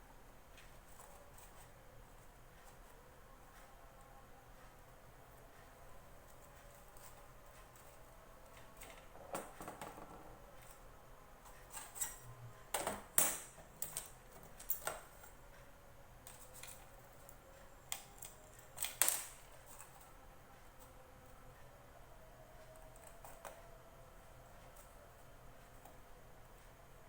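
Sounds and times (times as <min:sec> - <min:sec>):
small parts and tools clattering: 0:11.7 - 0:15.4.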